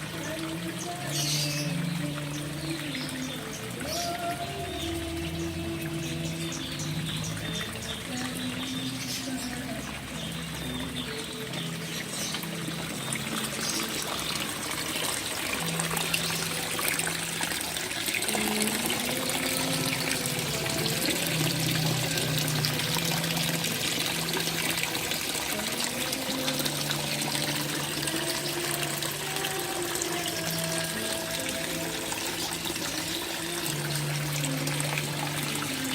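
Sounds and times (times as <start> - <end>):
water trickling and splashing: 0.0 - 35.9.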